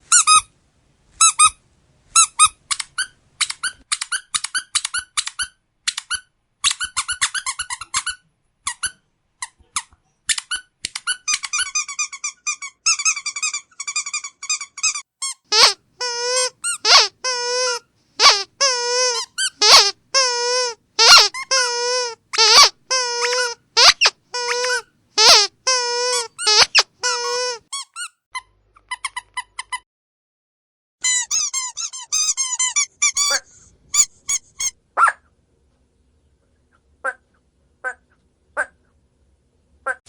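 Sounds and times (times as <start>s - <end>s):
squeaky dog toy squeaking: 0.0s - 0.5s, 1.2s - 1.6s, 2.2s - 9.0s, 10.3s - 28.2s, 31.0s - 34.8s.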